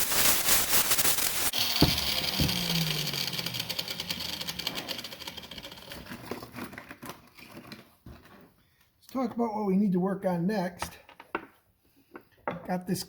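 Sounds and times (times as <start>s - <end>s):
grinder sanding paint off metal: 0.0s - 5.9s
grinder motor winding down: 1.4s - 6.5s
knocks: 1.8s - 2.6s.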